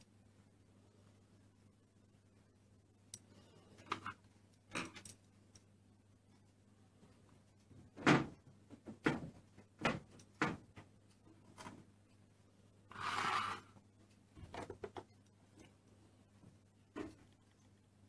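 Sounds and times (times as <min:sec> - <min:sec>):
rustling scrape: 0:12.9 - 0:13.7.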